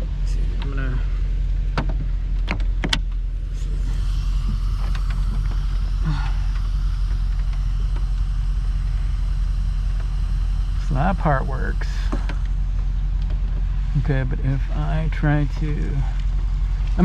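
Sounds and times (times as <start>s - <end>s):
steady low hum: 0.0s - 17.0s
electric motor whirring: 0.3s - 17.0s
sharp clicks: 3.9s - 11.4s.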